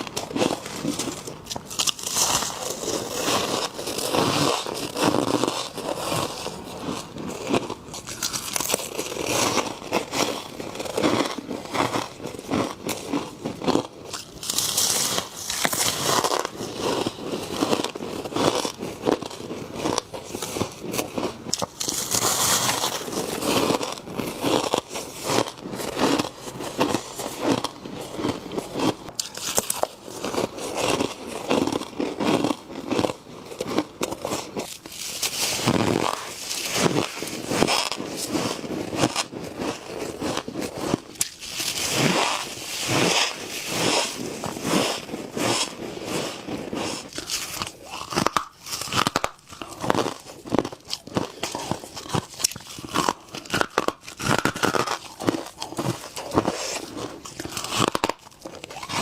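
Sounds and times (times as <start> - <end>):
frost being chewed crunching: 0.0 - 59.0.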